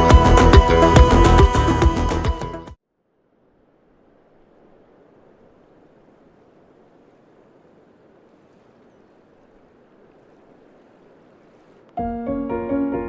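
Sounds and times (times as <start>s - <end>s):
faint steady rushing noise: 2.8s - 13.0s.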